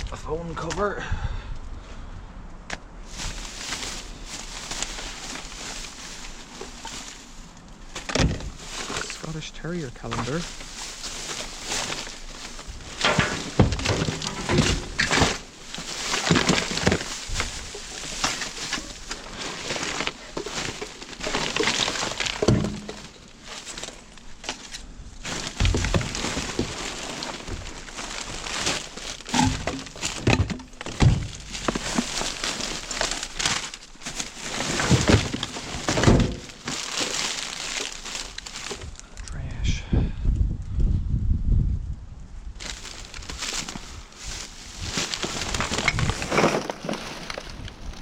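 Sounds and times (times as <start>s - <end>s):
plastic and paper rustling: 3.0s - 39.0s, 42.6s - 48.0s
objects knocking and clattering: 10.1s - 38.9s.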